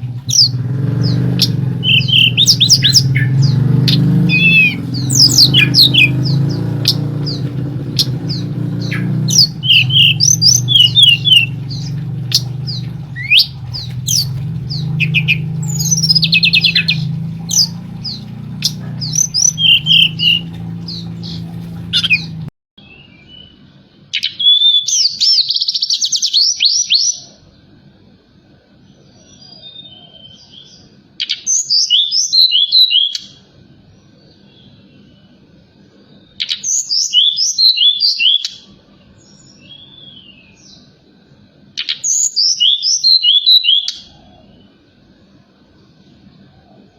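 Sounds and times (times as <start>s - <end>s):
low steady hum: 0.0s - 22.5s
songbird chirps and trills: 0.0s - 27.6s, 28.6s - 46.9s.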